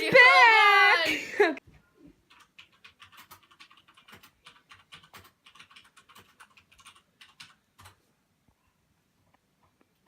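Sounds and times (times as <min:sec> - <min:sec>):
rapid keyboard typing: 0:02.2 - 0:08.1.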